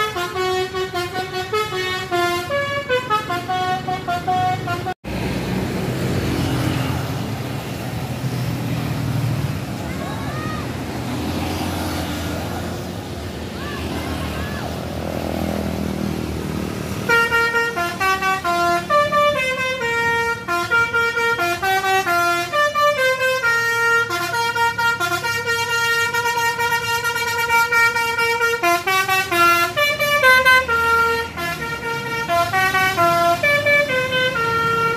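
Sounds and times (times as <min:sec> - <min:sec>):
multi-tone bus horn melody: 0:00.0 - 0:05.0, 0:16.8 - 0:34.9.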